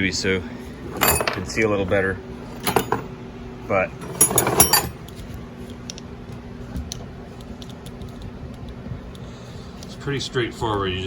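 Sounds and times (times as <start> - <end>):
metal parts clattering: 0.8 - 1.7, 2.4 - 3.1, 4.0 - 5.0.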